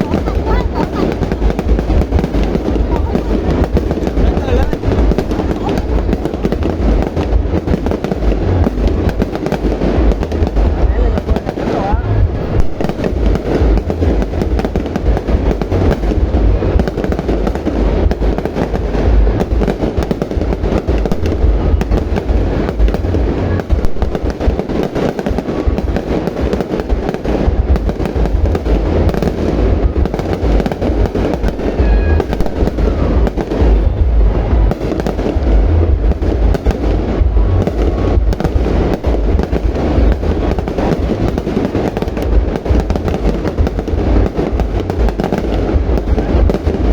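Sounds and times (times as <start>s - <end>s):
fireworks bangs and booms: 0.0s - 46.9s
low rumble: 0.0s - 46.9s.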